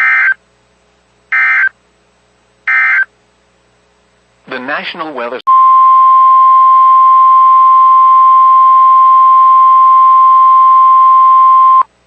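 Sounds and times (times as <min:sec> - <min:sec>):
steady warning alarm tone: 0:01.3 - 0:01.7, 0:02.7 - 0:03.1.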